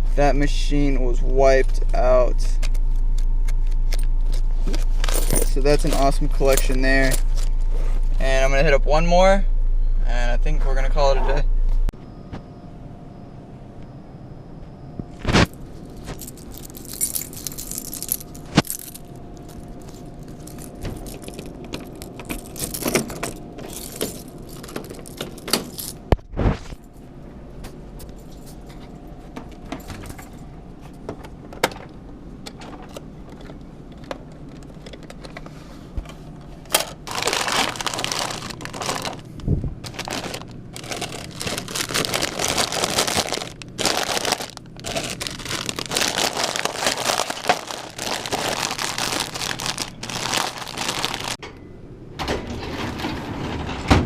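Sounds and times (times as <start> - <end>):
faint steady hum: 0.0 - 52.5
keys jangling: 5.0 - 7.5, 16.1 - 26.1
handling clicks and knocks: 29.4 - 37.2.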